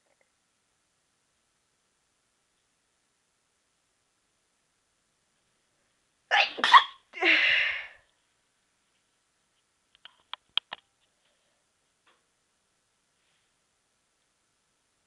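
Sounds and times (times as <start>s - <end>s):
person stifled sneeze: 6.3s - 7.9s
faint clicks: 9.6s - 11.2s.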